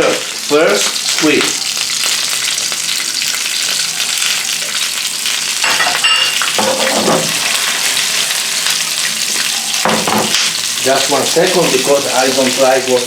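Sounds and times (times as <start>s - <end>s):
squid sizzling in oil: 0.0s - 13.0s
clink and scrape: 5.6s - 7.0s.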